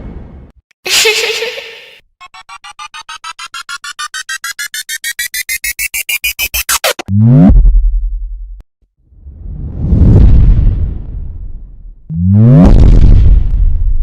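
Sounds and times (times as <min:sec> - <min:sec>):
rising synthesized beeps: 0:02.2 - 0:07.1
deep bass tone: 0:07.1 - 0:08.6.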